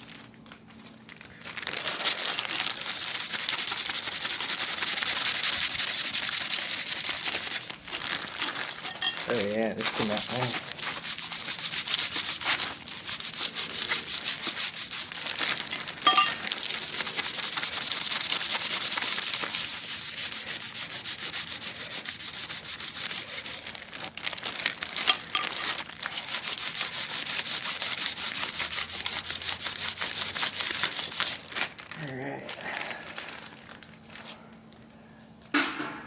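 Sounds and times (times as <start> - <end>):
scouring pad scrubbing metal: 2.9 - 7.7, 8.4 - 23.7, 26.0 - 31.4.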